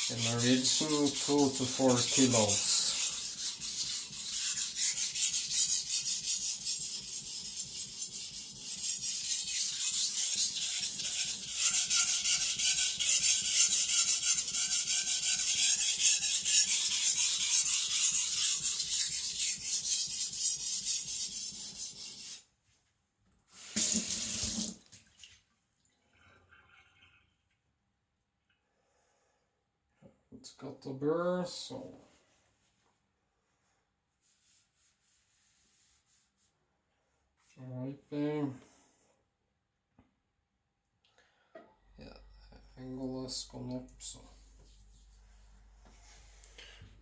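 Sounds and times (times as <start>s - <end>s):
knife scraping on whetstone: 0.0s - 22.4s.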